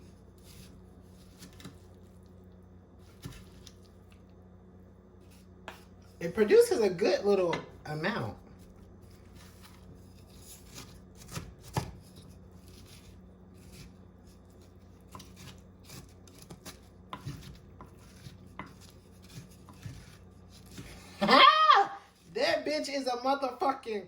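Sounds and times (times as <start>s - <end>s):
utensil tapping and scraping: 5.2s - 7.8s, 8.6s - 21.1s
person exclaiming: 21.2s - 23.8s.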